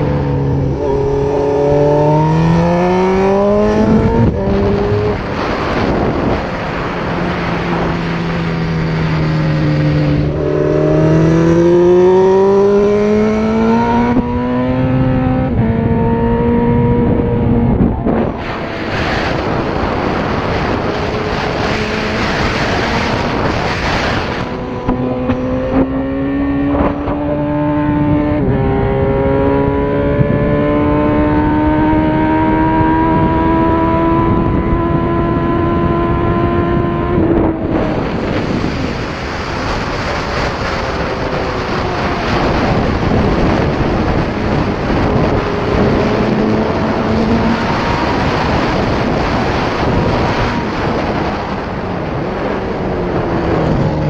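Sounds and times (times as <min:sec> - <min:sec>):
motorcycle engine accelerating: 0:00.0 - 0:54.0
wind rush: 0:00.0 - 0:54.0.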